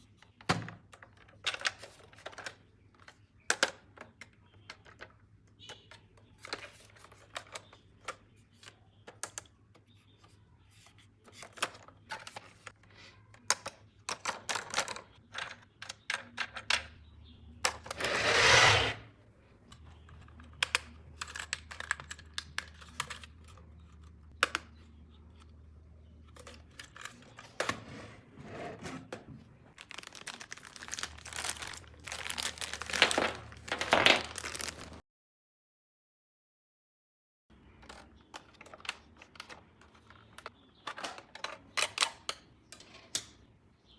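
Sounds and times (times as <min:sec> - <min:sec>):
toy packaging clicks and taps: 0:19.7 - 0:24.8, 0:37.8 - 0:43.3
packaging crinkling: 0:29.7 - 0:35.0
packaging tearing rustle: 0:29.8 - 0:35.0.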